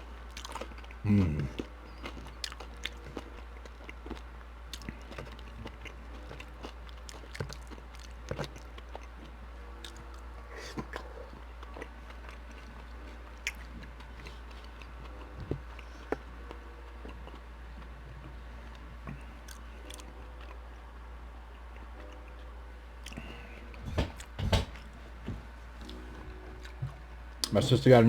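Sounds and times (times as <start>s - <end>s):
chewing and mouth smacks: 0.1s - 23.6s
low hum: 9.4s - 28.0s.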